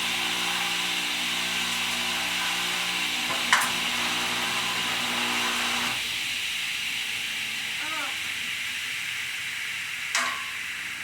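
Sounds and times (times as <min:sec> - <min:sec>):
table saw cutting board: 0:00.0 - 0:06.0.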